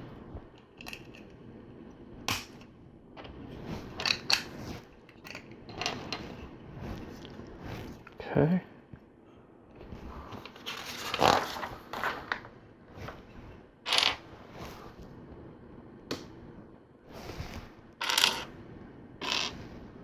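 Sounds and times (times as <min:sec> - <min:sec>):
plastic toy bricks rattling: 0:13.9 - 0:14.2, 0:18.0 - 0:18.5, 0:19.2 - 0:19.6.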